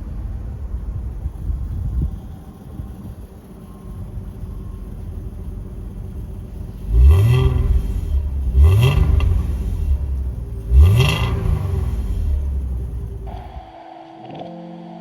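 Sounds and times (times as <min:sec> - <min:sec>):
car engine idling and revving: 0:00.0 - 0:13.8.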